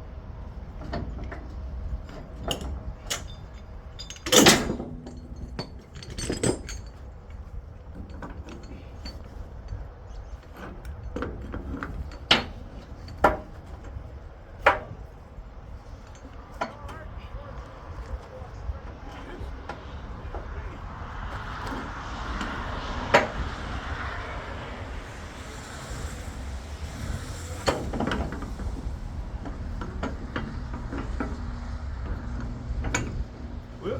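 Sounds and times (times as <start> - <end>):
steel chains clanking: 0.7 - 33.9
sharp metal clanks: 2.1 - 7.0.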